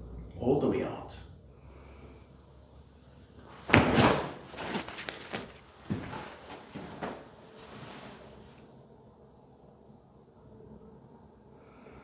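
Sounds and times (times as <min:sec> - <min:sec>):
loud joint crack and thud: 0:03.6 - 0:06.4.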